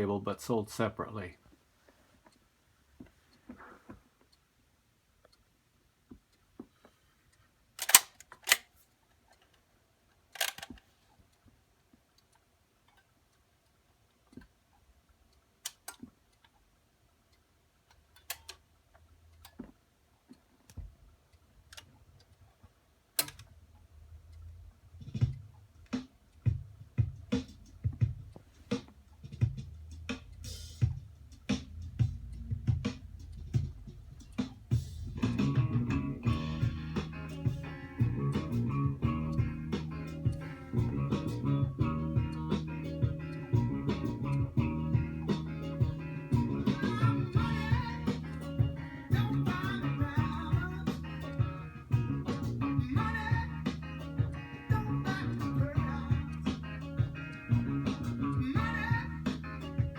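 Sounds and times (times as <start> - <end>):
record changer clicking and clunking: 23.2 - 23.6
music with deep beat: 25.0 - 59.9.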